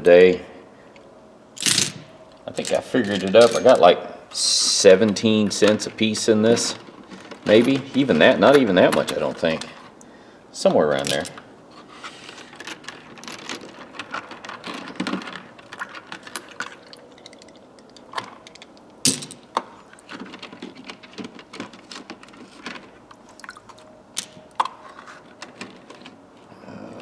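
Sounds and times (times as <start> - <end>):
metal sockets clinking: 1.6 - 2.0, 2.6 - 3.8, 11.0 - 11.4.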